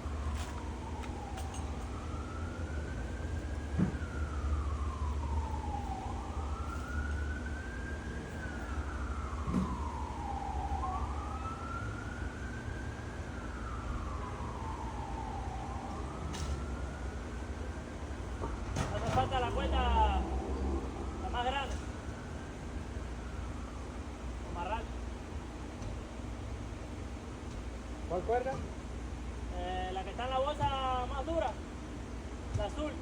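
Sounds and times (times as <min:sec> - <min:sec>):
siren wailing: 0:00.0 - 0:25.6.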